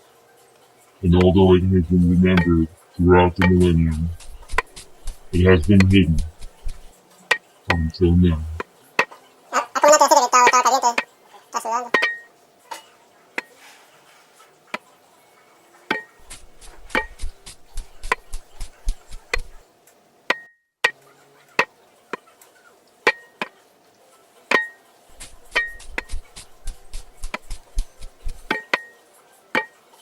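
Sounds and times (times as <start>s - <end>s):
sharp knocks and clicks: 25.2s - 28.6s.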